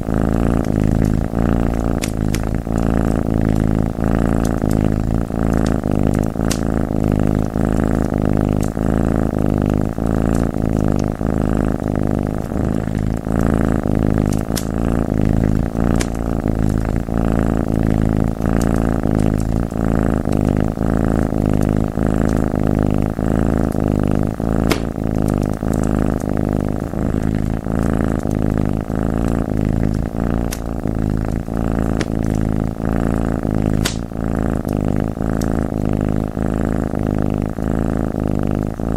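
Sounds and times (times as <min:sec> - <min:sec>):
cat purring loudly: 0:00.0 - 0:38.9
wood fire crackling: 0:13.8 - 0:19.6, 0:23.8 - 0:26.6, 0:33.7 - 0:34.1.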